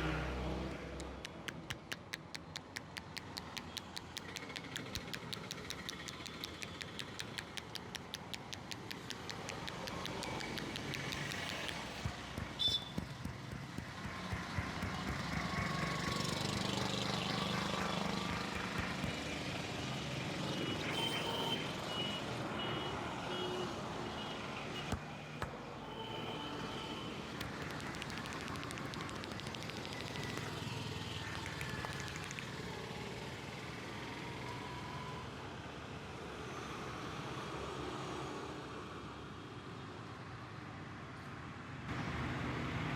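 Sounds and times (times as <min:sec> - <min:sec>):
vehicles running past: 0:00.0 - 0:25.9, 0:26.5 - 0:42.9
sharp clicks: 0:00.7 - 0:20.0, 0:27.4 - 0:32.8.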